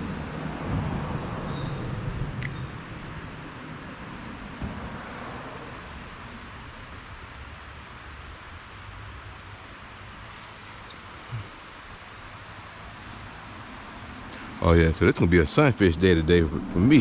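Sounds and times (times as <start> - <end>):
outdoor background hiss: 0.0 - 17.0
high bird chirps: 10.2 - 11.4.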